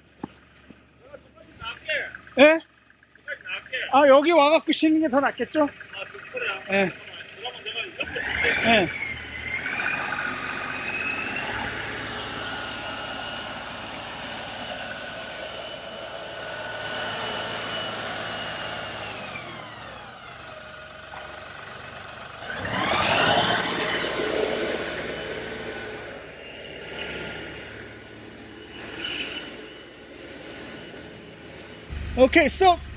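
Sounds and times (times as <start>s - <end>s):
tractor engine revving: 1.4s - 32.9s.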